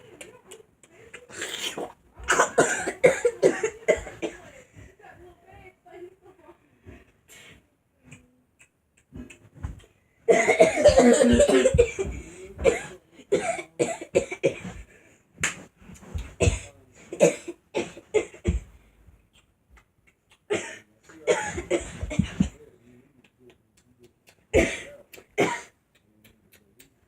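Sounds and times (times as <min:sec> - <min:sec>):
boy coughing: 0:01.3 - 0:04.5, 0:10.3 - 0:14.6, 0:20.5 - 0:22.5, 0:24.6 - 0:25.7.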